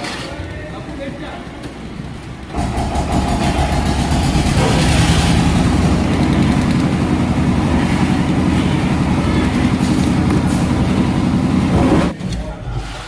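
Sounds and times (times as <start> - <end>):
boat engine rumbling: 1.8 - 12.2.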